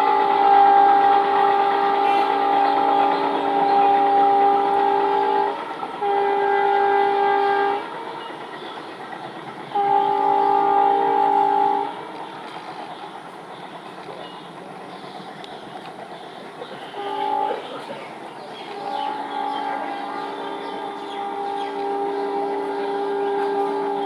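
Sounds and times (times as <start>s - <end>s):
locomotive air horn blasts: 0.0s - 8.2s, 9.7s - 12.0s, 16.9s - 17.9s, 18.7s - 24.0s
train wheels clattering on rails: 1.1s - 24.0s.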